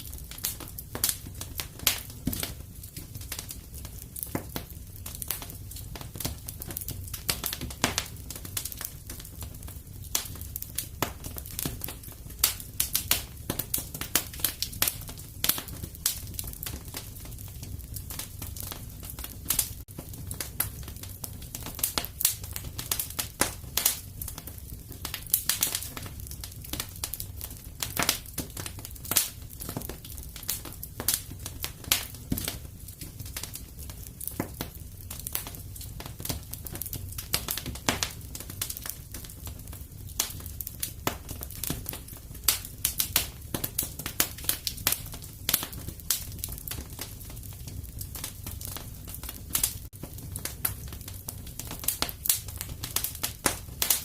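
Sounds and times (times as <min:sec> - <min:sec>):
fire crackling: 0:00.0 - 0:54.0.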